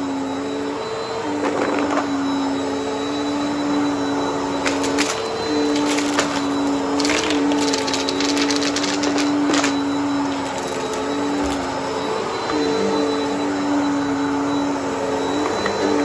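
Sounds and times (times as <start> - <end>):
vacuum cleaner motor hum: 0.0 - 16.0
debris clicking up vacuum: 4.6 - 11.8.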